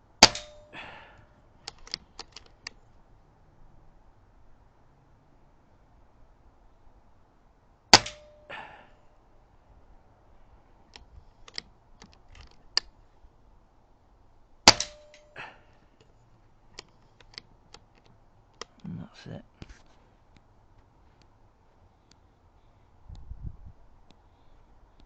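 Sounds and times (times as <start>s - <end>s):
air rifle shots: 0.2s - 1.1s, 7.9s - 8.7s, 14.7s - 15.5s
small clicks: 1.6s - 2.8s, 10.9s - 12.9s, 16.0s - 18.9s.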